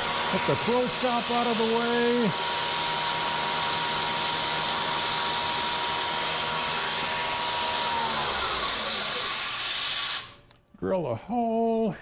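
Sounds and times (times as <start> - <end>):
coolant sprayer hissing: 0.0 - 2.3.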